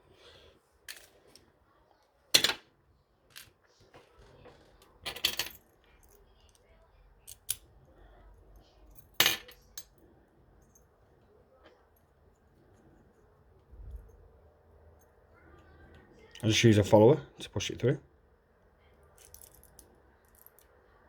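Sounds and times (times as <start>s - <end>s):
padlock and tools clicking: 7.2s - 7.7s.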